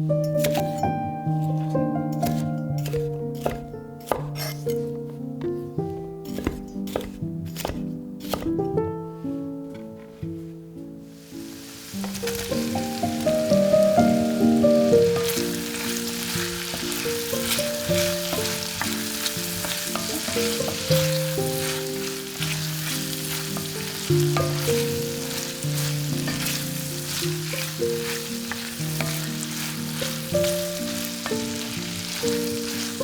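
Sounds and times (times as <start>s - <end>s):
soft background music: 0.0s - 33.0s
food sizzling in frying pan: 11.1s - 33.0s.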